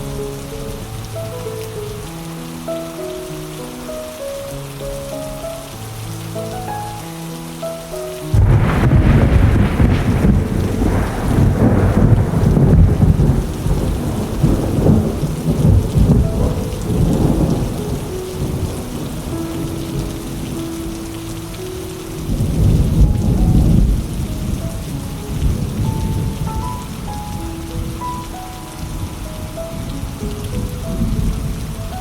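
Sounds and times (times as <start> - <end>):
steady rain: 0.0 - 32.0
low rolling thunder: 8.3 - 32.0.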